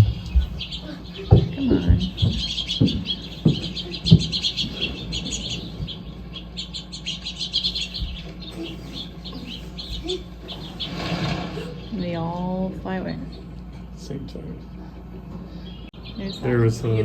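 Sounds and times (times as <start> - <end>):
dull thumps: 0.0 - 6.0
birds chirping over loudspeaker: 0.0 - 17.0.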